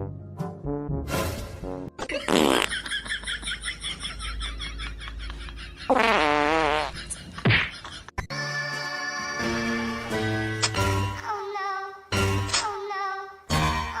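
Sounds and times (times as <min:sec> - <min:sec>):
fart-like sounds: 0:02.3 - 0:02.7, 0:05.9 - 0:07.7.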